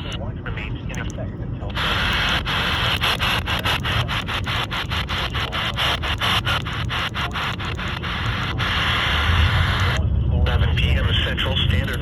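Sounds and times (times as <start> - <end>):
crackling radio static: 0.0 - 12.0.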